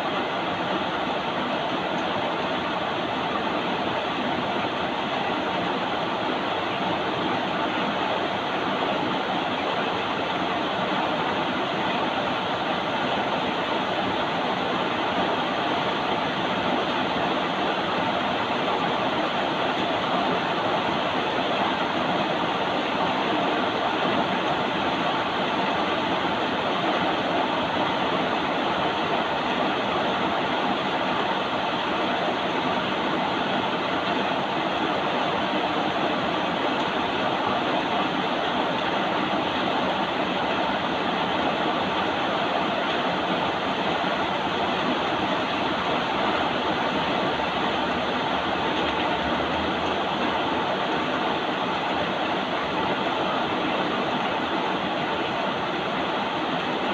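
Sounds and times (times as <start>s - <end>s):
rain hissing: 0.0s - 56.9s.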